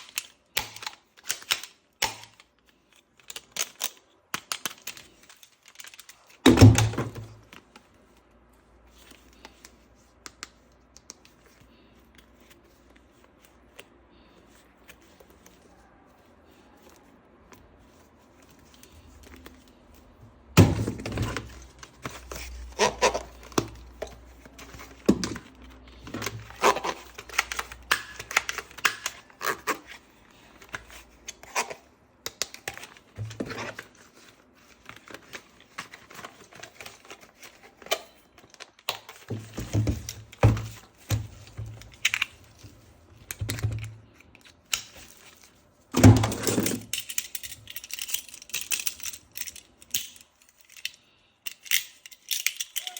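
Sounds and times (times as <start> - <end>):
plastic toy parts clicking: 0.0 - 6.3, 46.7 - 52.9.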